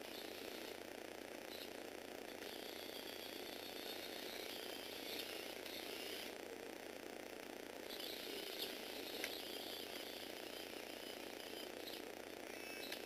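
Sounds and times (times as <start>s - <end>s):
higher motor whine: 0.0s - 13.0s
toy car motor gear whir: 7.9s - 13.0s.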